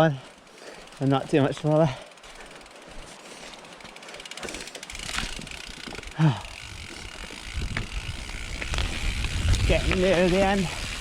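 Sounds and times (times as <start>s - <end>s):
bike rattling: 0.0s - 11.0s
bike tyres on dirt: 0.0s - 11.0s
rider grunting: 6.0s - 7.5s.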